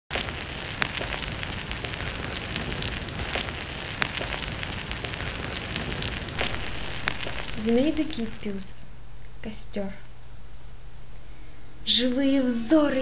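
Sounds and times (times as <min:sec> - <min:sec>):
wood fire crackling: 0:00.1 - 0:08.9.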